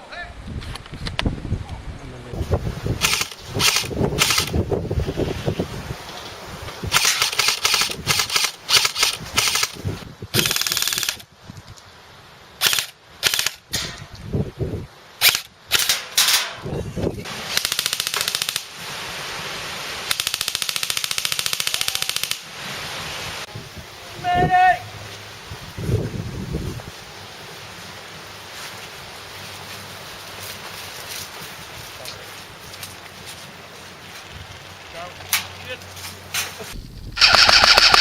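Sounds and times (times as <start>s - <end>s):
airsoft guns firing: 3.0s - 4.6s, 7.0s - 9.8s, 36.8s - 38.0s.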